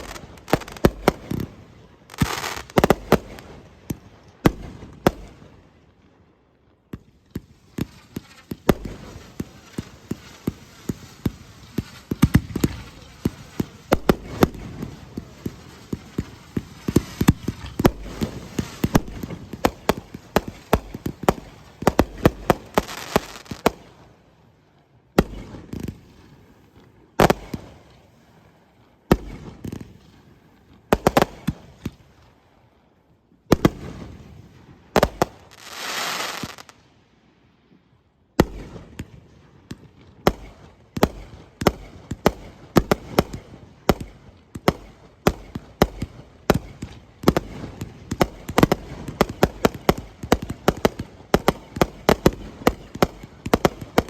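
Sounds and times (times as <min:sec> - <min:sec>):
fireworks bangs: 0:00.0 - 0:05.8, 0:06.9 - 0:24.2, 0:25.2 - 0:28.5, 0:29.1 - 0:32.3, 0:33.5 - 0:37.0, 0:38.4 - 0:54.0
firework hiss: 0:02.1 - 0:03.4, 0:07.7 - 0:23.8, 0:35.0 - 0:36.8.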